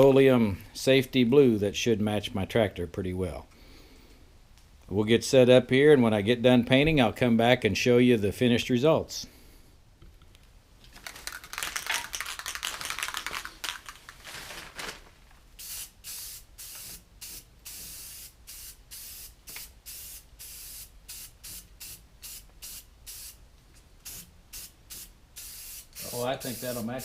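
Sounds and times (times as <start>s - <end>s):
spray paint can hissing: 15.6s - 23.4s, 24.0s - 27.0s.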